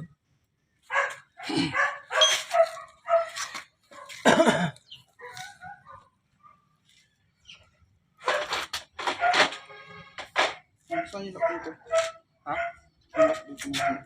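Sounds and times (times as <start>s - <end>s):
dog barking: 0.9s - 4.2s, 5.2s - 6.7s, 8.2s - 9.6s, 10.9s - 14.0s.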